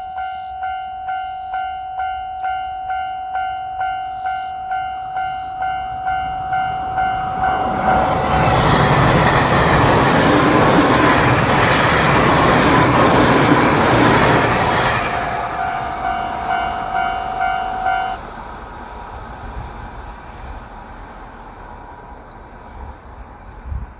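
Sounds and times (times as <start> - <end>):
level-crossing bell ringing: 0.0 - 9.2, 12.9 - 18.2
electric train passing with whine: 0.0 - 23.7
train rumble: 0.0 - 23.9.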